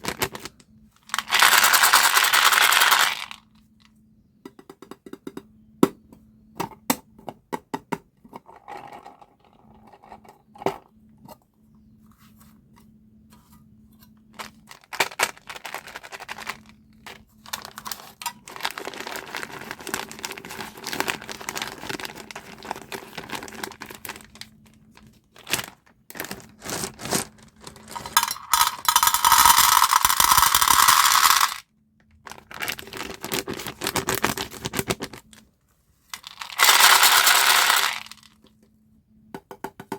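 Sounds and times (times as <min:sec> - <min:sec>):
plastic packaging crinkling: 0:00.0 - 0:00.5, 0:14.4 - 0:31.6, 0:32.2 - 0:35.4
hard candies clicking: 0:28.0 - 0:31.6.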